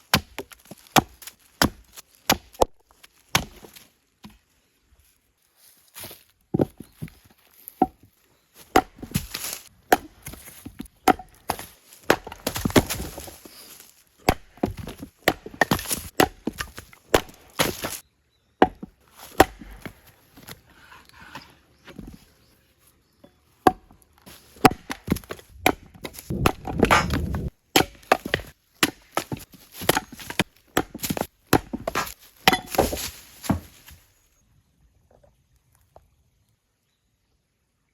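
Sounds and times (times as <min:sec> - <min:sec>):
axe chopping logs: 0:00.0 - 0:04.4, 0:08.6 - 0:18.0, 0:18.6 - 0:20.6, 0:23.6 - 0:33.9
split wood cracking and clattering: 0:23.6 - 0:33.8.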